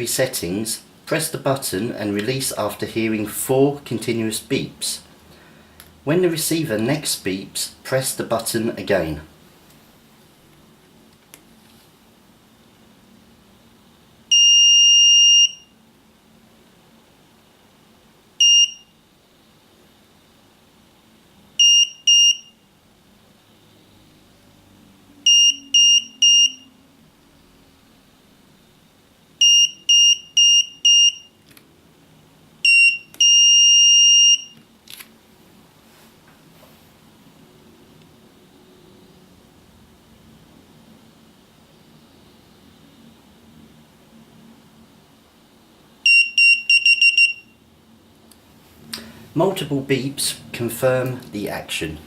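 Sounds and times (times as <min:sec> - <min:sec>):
buzzer beeping: 0:14.3 - 0:15.7, 0:18.4 - 0:18.9, 0:21.6 - 0:22.6, 0:25.3 - 0:26.7, 0:29.4 - 0:31.4, 0:32.6 - 0:34.6, 0:46.0 - 0:47.6.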